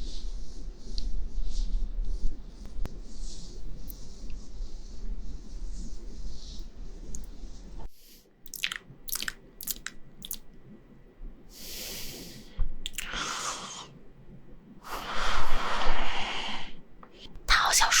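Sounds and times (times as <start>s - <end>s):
crisp mouth clicks: 8.5s - 10.4s, 12.8s - 13.2s
breathy hissing: 11.5s - 13.9s, 14.8s - 16.8s.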